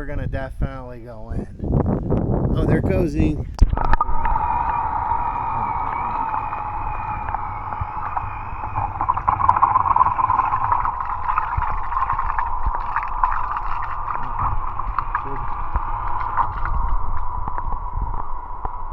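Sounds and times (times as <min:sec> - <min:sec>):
low rumble: 0:00.0 - 0:18.9
pool cleaner pump whining: 0:04.0 - 0:18.9
watery hiss: 0:04.4 - 0:18.6.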